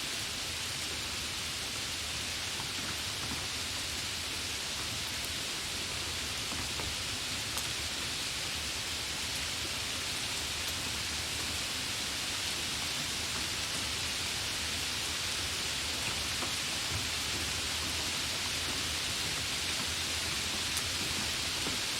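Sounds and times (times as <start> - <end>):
light rain falling: 0.0 - 21.9
raindrop ticks: 15.7 - 21.8.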